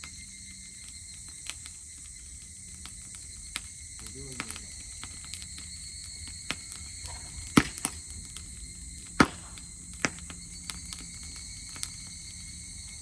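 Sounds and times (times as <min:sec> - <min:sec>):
grass fire crackling: 0:00.0 - 0:13.0
insects chirping: 0:00.0 - 0:13.0
sharp pops of fire: 0:00.0 - 0:13.0.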